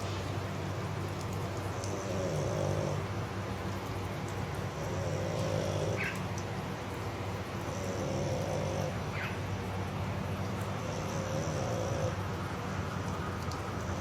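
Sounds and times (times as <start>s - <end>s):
dog snoring: 1.9s - 3.0s, 4.7s - 6.1s, 7.7s - 9.0s, 10.8s - 12.2s.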